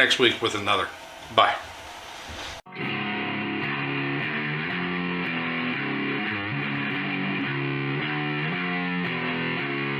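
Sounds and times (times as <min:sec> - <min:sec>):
distorted electric guitar riff: 0:02.7 - 0:09.9.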